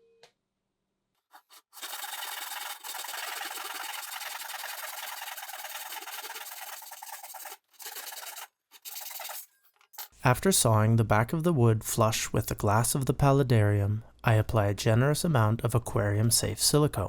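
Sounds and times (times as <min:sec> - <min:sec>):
saw cutting through wood: 0:01.4 - 0:09.4.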